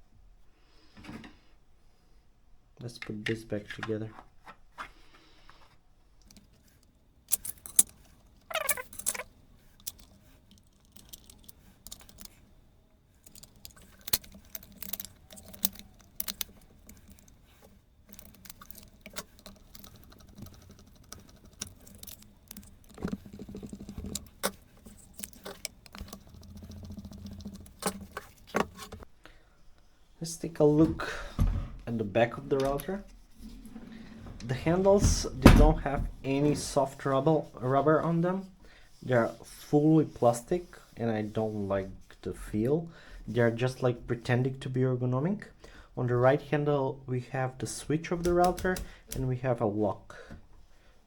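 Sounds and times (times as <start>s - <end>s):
router parts clicking and rattling: 6.2s - 29.1s, 48.1s - 49.4s.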